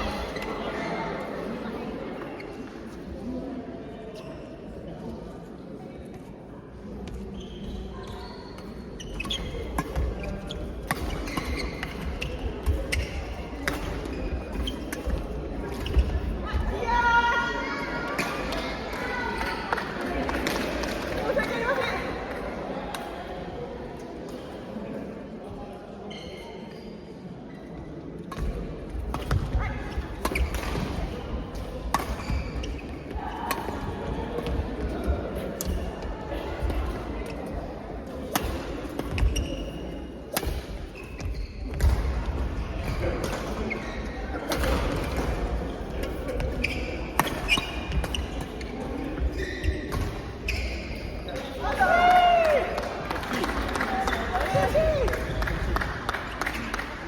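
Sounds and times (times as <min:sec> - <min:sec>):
background murmur: 0:00.0 - 0:57.0
shoe squeaks on court: 0:07.3 - 0:15.2, 0:26.1 - 0:27.2, 0:31.9 - 0:33.1, 0:38.4 - 0:42.0, 0:42.8 - 0:45.3, 0:46.3 - 0:51.6.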